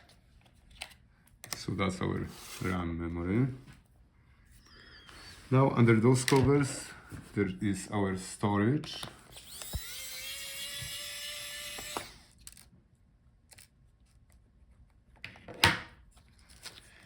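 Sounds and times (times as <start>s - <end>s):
electric screwdriver whining: 9.2s - 12.4s.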